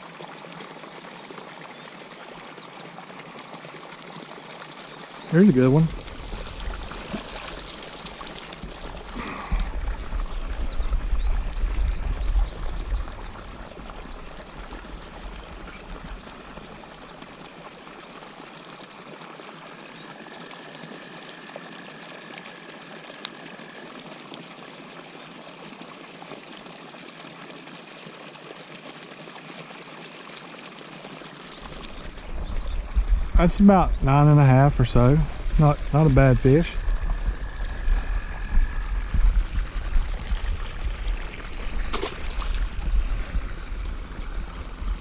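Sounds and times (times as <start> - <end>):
water pouring into a pond: 0.0 - 45.0
low rumble: 32.0 - 45.0.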